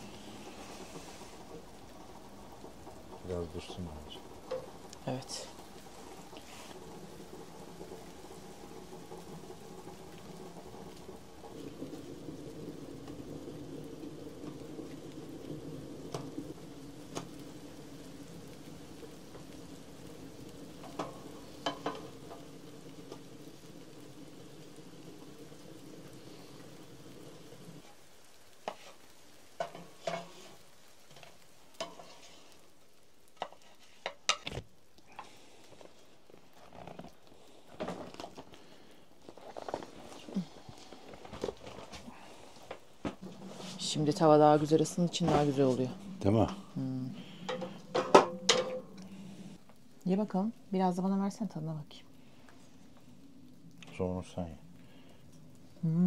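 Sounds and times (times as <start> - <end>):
food sizzling in a pan: 0.0 - 56.0
utensils tapping on a pan: 20.8 - 22.4, 29.6 - 30.5, 47.5 - 48.9.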